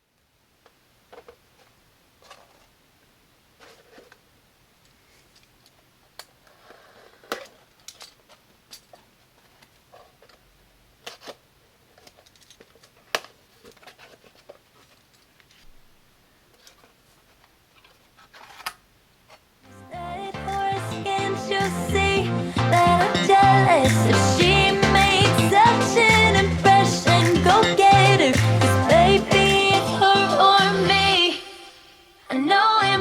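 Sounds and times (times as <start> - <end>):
small clicks and handling noises: 4.8 - 15.8, 16.5 - 19.4.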